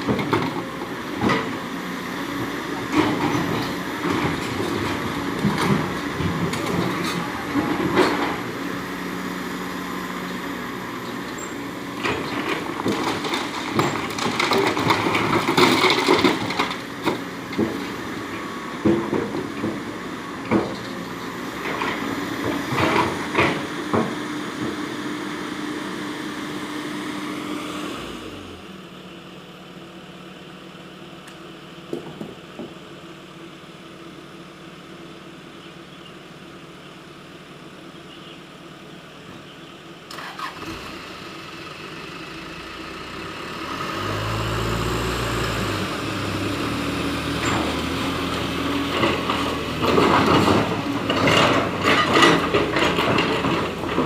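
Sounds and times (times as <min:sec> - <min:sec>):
diesel engines running: 0:00.0 - 0:54.0.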